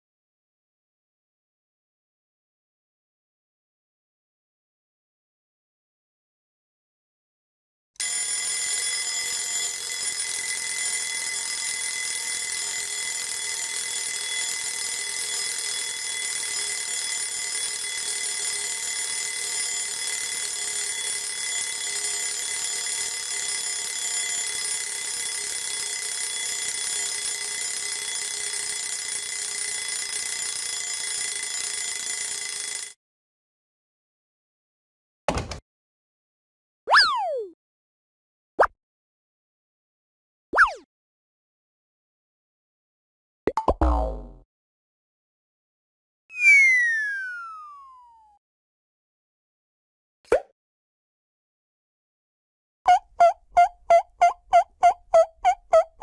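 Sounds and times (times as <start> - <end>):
ringing alarm tones: 46.3 - 48.3.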